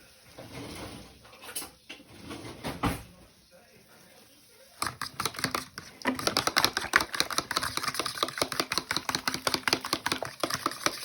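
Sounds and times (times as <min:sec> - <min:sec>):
eggs beaten with a whisk: 0:03.7 - 0:11.0.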